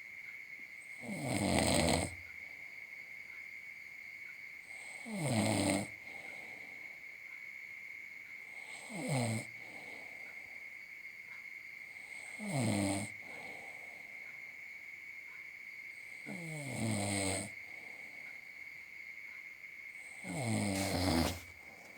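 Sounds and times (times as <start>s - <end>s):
man snoring: 1.0s - 2.2s, 5.0s - 5.9s, 8.7s - 9.5s, 12.4s - 13.1s, 16.3s - 17.5s, 20.2s - 21.5s.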